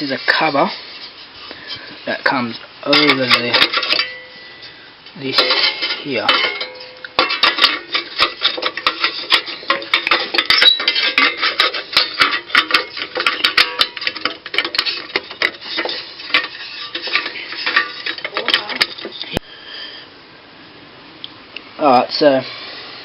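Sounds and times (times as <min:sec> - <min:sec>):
small metal tools clinking: 0:02.9 - 0:19.4.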